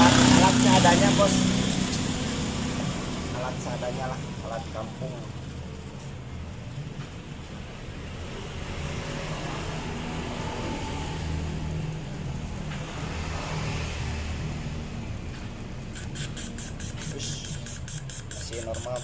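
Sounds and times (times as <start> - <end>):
scooter engine running: 0.0 - 3.4
rapid ticking: 15.8 - 19.0.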